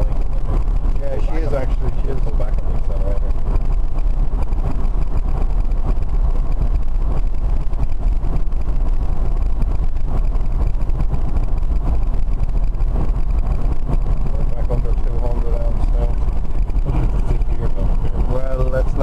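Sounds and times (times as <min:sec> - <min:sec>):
road and wind rumble of driving car: 0:00.0 - 0:19.0.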